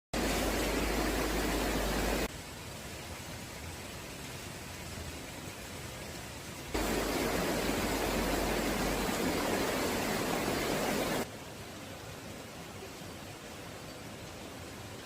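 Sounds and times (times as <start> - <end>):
river water rushing: 0.2 - 2.3, 6.7 - 15.0
faint steady hiss: 0.2 - 15.0.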